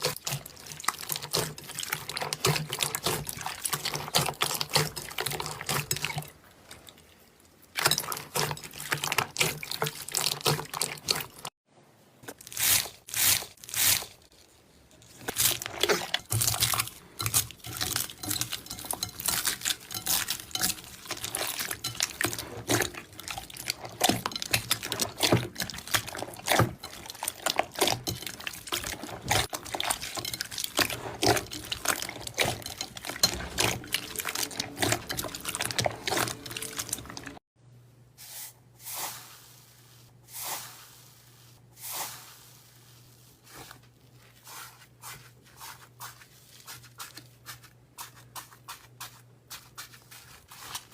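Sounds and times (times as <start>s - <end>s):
slime squelches: 12.3s - 37.4s.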